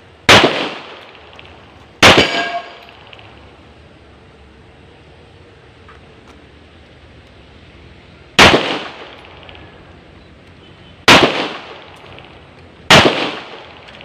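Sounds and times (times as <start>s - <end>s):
pistol shots: 0.3s - 3.3s, 8.4s - 9.6s, 11.0s - 14.0s.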